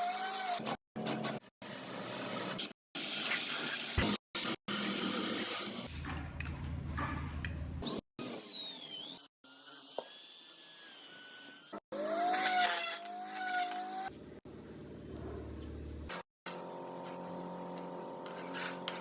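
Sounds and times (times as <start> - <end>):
low motor hum: 14.1 - 19.0.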